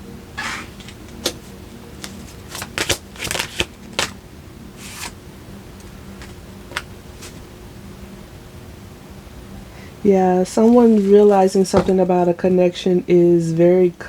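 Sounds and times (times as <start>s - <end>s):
cards being shuffled: 0.4s - 4.2s, 4.8s - 5.2s, 6.2s - 7.4s, 10.5s - 12.2s.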